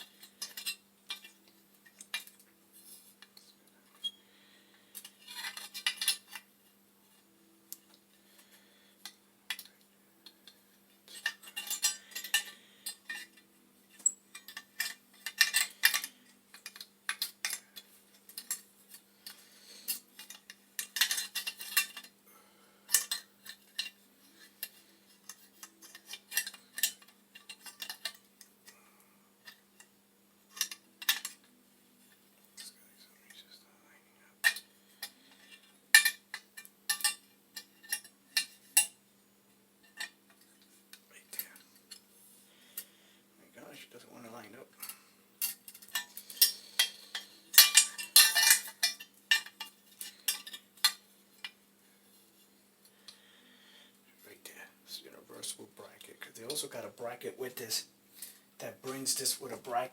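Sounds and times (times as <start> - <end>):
metal tools clinking and scraping: 0.0 - 6.5, 8.2 - 22.2, 22.9 - 28.8, 30.5 - 33.4, 34.4 - 39.0, 39.8 - 43.0, 44.2 - 53.5, 55.4 - 59.9.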